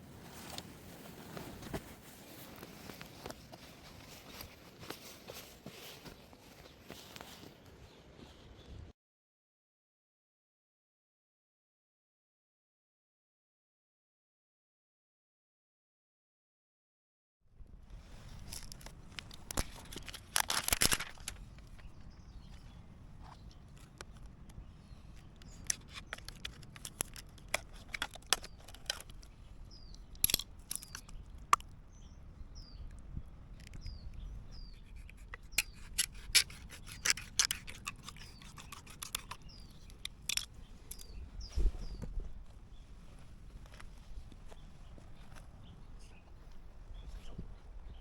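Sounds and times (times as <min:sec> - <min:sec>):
plastic cups clicking and crinkling: 0:18.4 - 0:21.9, 0:23.4 - 0:31.8, 0:34.8 - 0:41.2
small bird chirping: 0:21.3 - 0:43.2.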